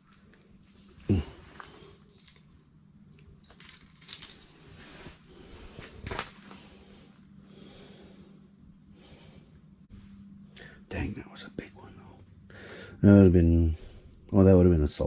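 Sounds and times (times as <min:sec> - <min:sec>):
steady low hum: 0:00.0 - 0:15.0
light metallic clinks: 0:01.6 - 0:04.6.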